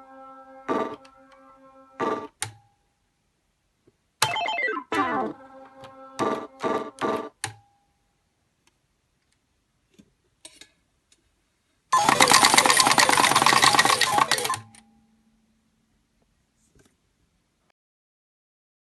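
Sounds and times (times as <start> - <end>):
metal tokens clattering into tray: 12.0 - 14.7.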